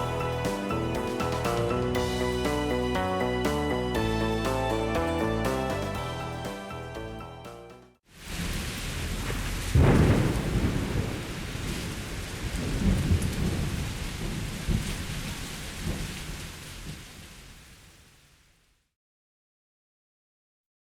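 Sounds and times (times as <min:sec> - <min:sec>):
steady rain: 0:08.1 - 0:18.8
rolling thunder: 0:08.2 - 0:17.8
thunderclap: 0:08.2 - 0:18.2.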